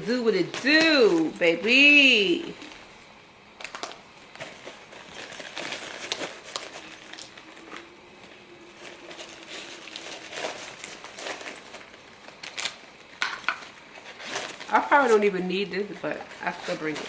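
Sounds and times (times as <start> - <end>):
packaging clicks taps and rustles: 3.6 - 15.4.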